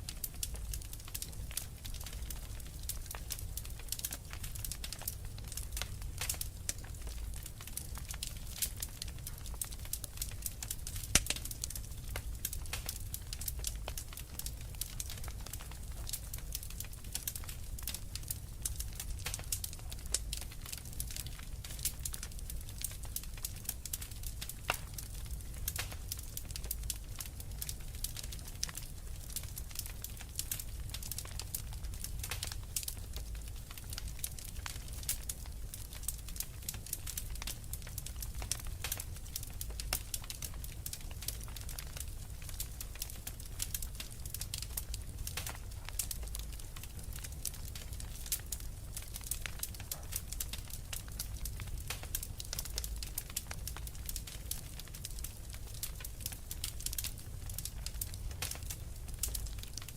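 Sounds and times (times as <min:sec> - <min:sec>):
fire crackling and popping: 0:00.0 - 0:59.9.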